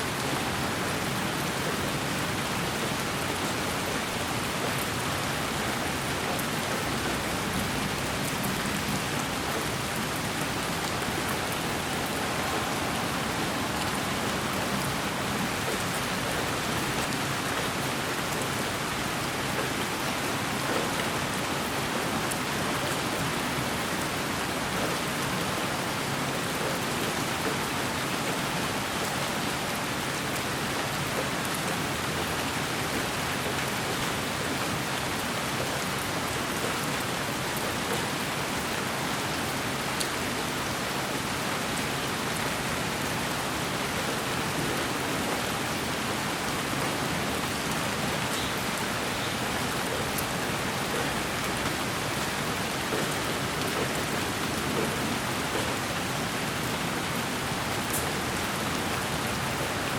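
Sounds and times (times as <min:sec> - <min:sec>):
steady white noise hiss: 0:00.0 - 0:19.2.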